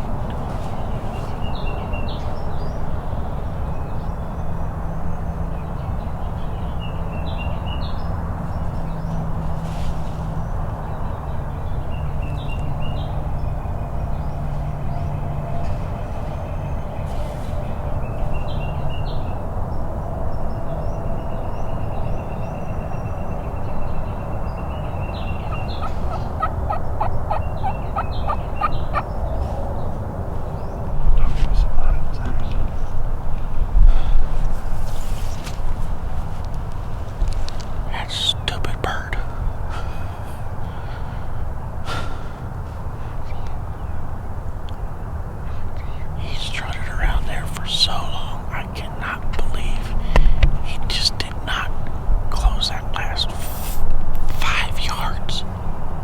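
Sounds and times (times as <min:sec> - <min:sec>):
wild turkeys gobbling: 0:25.4 - 0:29.1.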